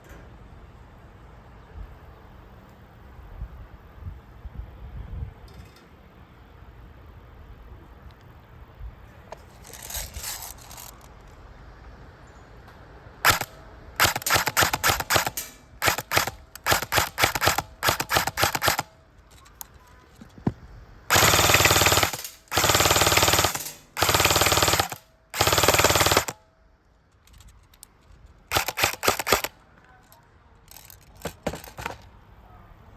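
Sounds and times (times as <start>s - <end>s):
airsoft gun firing bursts: 13.2s - 18.9s, 21.1s - 26.4s, 28.5s - 29.6s.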